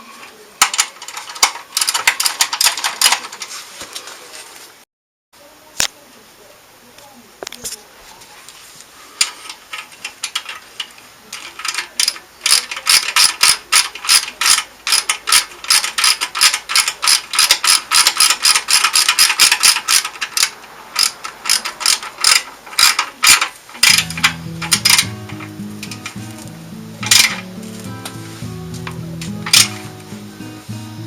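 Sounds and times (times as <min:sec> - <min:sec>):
ratchet wrench clicking: 0:09.2 - 0:26.2, 0:27.0 - 0:27.4, 0:28.8 - 0:29.8.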